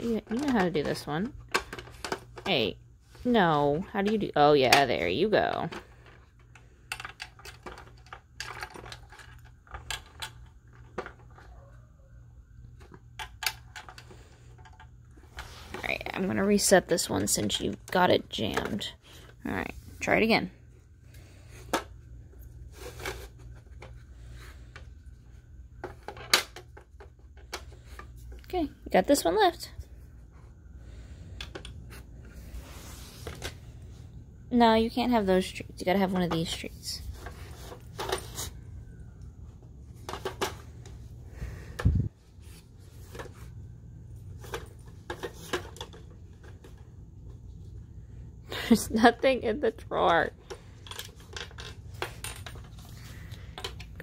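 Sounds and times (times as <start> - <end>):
puzzle box parts scraping and rattling: 0.0 - 11.5, 21.2 - 25.0, 34.7 - 38.8, 42.4 - 47.6.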